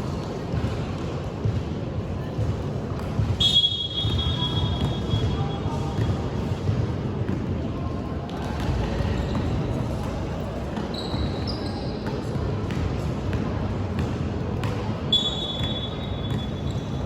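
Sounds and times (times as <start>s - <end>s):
steady din in gym hall: 0.0s - 17.0s
basketball bouncing on court: 2.3s - 7.6s, 8.3s - 17.0s
sneakers squeaking on floor: 3.2s - 6.8s, 8.6s - 9.8s, 10.7s - 12.9s, 14.0s - 17.0s.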